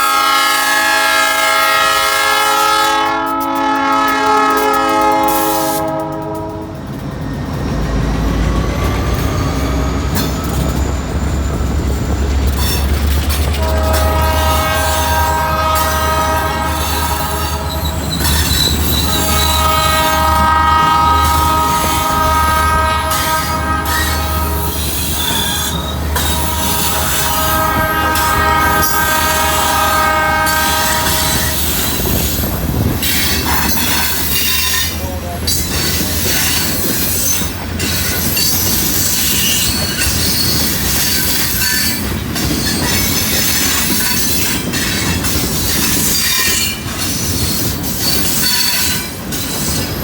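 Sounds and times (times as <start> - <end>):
locomotive air horn blasts: 0.0 - 6.8, 13.5 - 32.0
deep rumble of diesel locomotives: 0.0 - 50.0.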